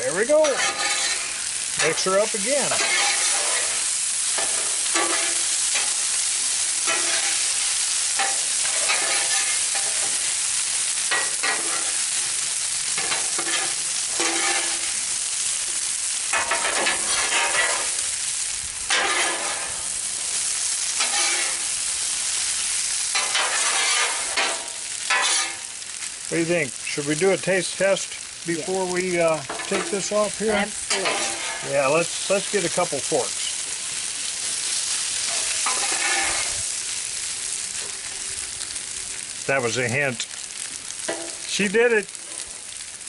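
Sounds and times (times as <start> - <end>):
food sizzling on griddle: 0.0 - 43.0
spatulas scraping griddle: 0.1 - 6.1, 6.8 - 10.4, 11.1 - 12.4, 13.0 - 15.1, 16.3 - 18.0, 18.9 - 19.9, 20.9 - 21.7, 23.1 - 25.7, 28.9 - 33.5, 35.0 - 36.7.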